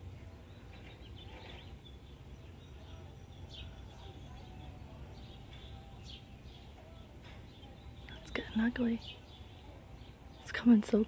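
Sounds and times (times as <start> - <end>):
birds chirping: 0.0 - 11.0.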